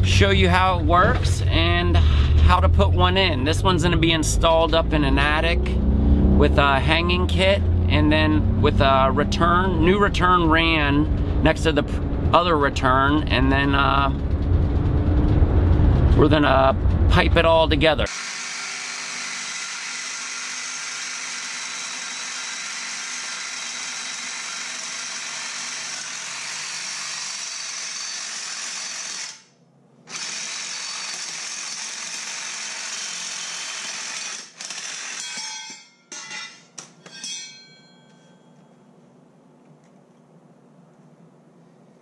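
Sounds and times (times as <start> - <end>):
power saw cutting steel: 18.1 - 29.5, 30.1 - 37.6.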